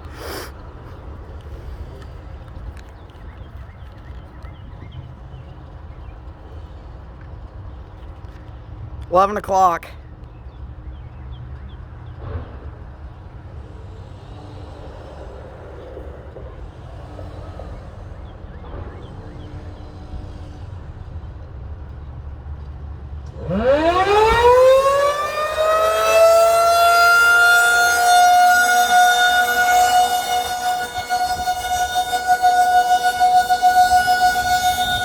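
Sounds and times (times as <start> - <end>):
low background rumble: 10.3 - 23.4
warning siren winding up: 13.0 - 35.0.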